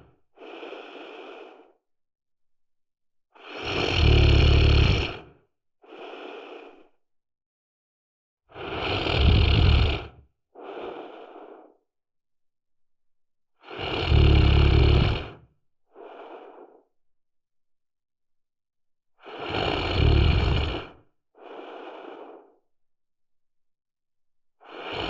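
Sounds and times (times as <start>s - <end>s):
soft breath out: 0.4s - 1.8s, 5.8s - 7.0s, 10.6s - 11.9s, 15.9s - 17.0s, 20.4s - 22.6s
loud snores: 3.4s - 5.4s, 8.5s - 11.4s, 13.6s - 16.6s, 19.2s - 22.4s, 24.6s - 25.0s.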